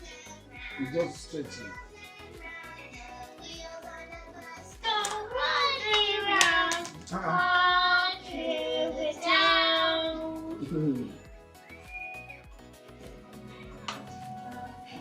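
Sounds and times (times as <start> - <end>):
child-like voice singing: 0.0 - 10.8
music: 0.0 - 15.0.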